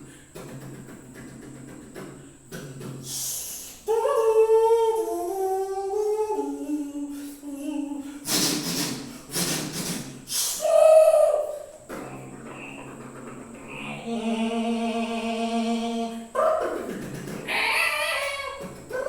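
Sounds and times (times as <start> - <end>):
person humming a tune: 0.0 - 19.0
breathy hissing bursts: 2.1 - 3.9, 7.0 - 16.4.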